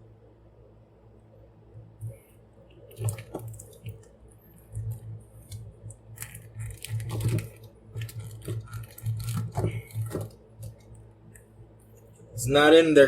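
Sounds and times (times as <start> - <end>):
plastic clicks and scrapes: 4.7 - 12.1.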